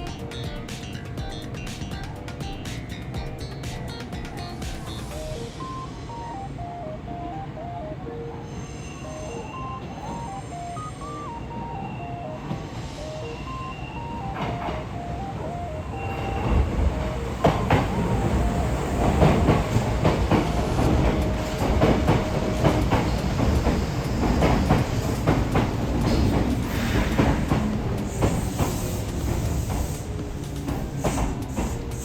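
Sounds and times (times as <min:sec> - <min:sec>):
electric train rumbling past: 0:00.0 - 0:32.0
train wheels clacking over rail joints: 0:17.4 - 0:32.0.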